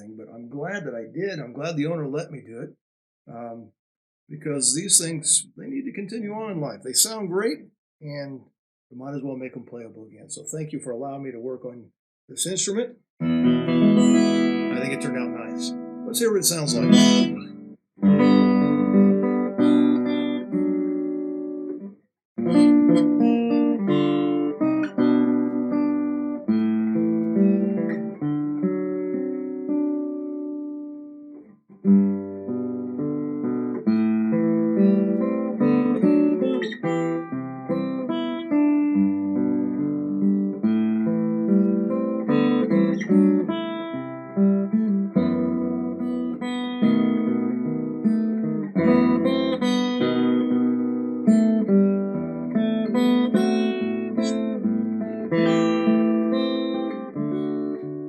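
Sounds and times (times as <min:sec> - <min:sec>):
acoustic guitar strummed and picked: 0:13.2 - 0:58.0.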